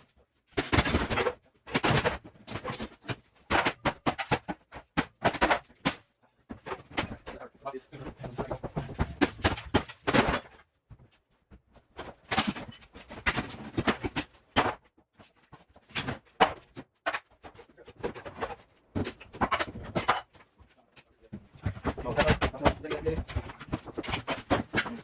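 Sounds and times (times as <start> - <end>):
knocks and clatters: 11.9 - 25.0.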